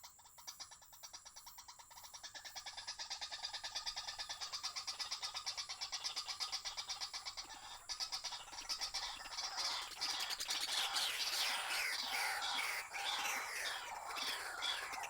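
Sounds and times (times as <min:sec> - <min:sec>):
bird rapid pulsing call: 0:09.0 - 0:15.0.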